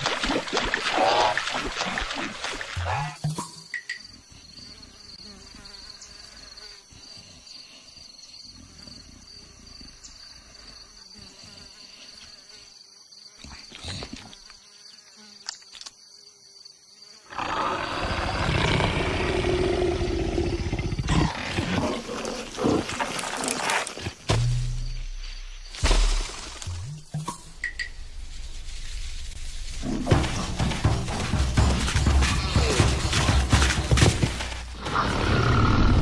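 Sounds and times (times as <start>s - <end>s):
animal roaring: 17.3s - 23.8s, 34.7s - 36.0s.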